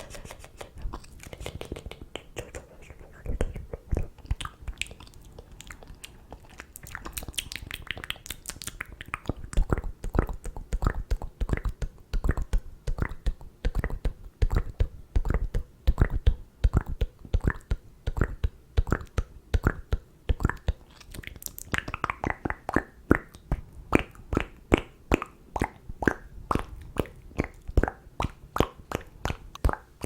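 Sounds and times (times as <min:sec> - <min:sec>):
lip smacks: 0:00.0 - 0:30.0
wet tongue clicks: 0:00.0 - 0:30.0.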